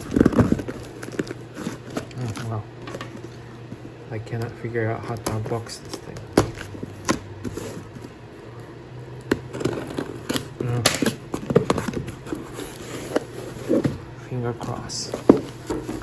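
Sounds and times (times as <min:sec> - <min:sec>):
cardboard box being handled: 0:05.0 - 0:08.2, 0:09.3 - 0:16.0.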